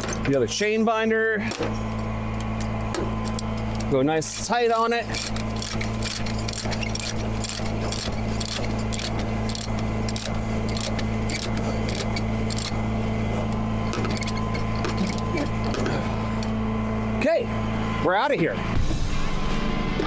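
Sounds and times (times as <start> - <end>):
steady engine hum: 0.0 - 20.0
chain binder clicking: 2.4 - 16.5
chain clinking: 2.5 - 16.2.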